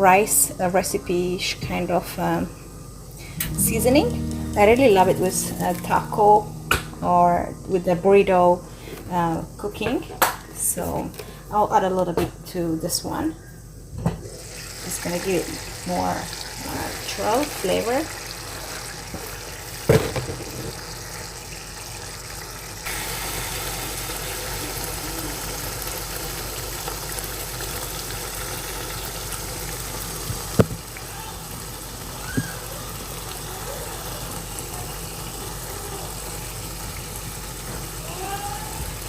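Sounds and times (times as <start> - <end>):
fan whirring: 0.0 - 28.4.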